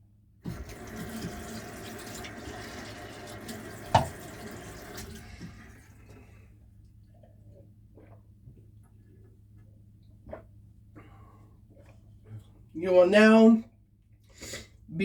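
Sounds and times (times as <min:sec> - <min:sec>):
tap water running into sink: 0:00.4 - 0:06.3.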